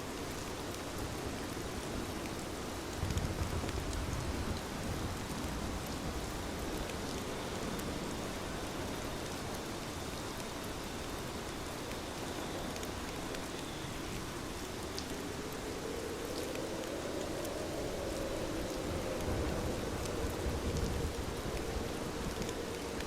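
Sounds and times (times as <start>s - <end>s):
heavy rain hissing: 1.0s - 23.0s
raindrop ticks: 3.0s - 8.3s, 11.9s - 23.0s.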